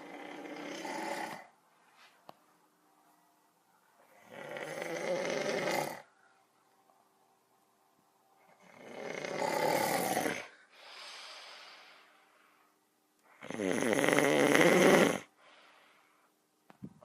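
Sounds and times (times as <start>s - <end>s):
person snoring loudly: 0.0s - 1.5s, 4.2s - 6.1s, 8.6s - 10.6s, 13.4s - 15.3s.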